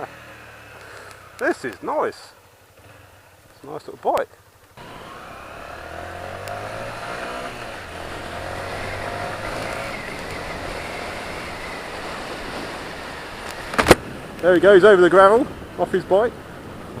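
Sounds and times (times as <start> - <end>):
motorcycle engine pulling away: 0.0 - 1.8, 4.8 - 14.3.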